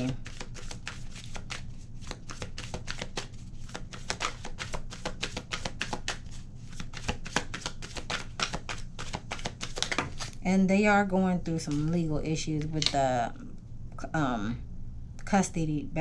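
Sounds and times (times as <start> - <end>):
cards being shuffled: 0.0 - 10.4, 11.7 - 12.0.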